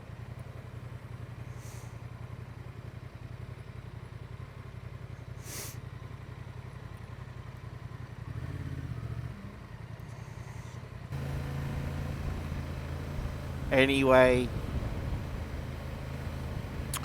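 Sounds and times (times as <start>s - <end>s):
motorcycle engine running: 0.0s - 17.0s
short hiss: 1.6s - 1.9s, 5.4s - 5.8s.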